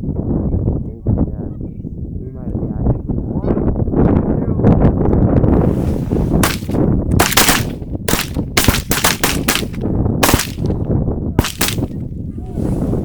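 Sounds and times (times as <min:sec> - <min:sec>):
wind rumble on microphone: 0:00.0 - 0:13.0
shotgun blasts: 0:06.4 - 0:10.8, 0:11.4 - 0:12.0.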